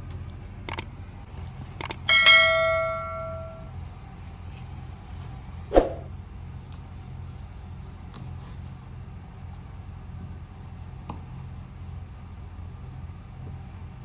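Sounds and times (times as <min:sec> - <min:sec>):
steady low hum: 0:00.0 - 0:14.0
metal struck ringing: 0:02.1 - 0:03.7.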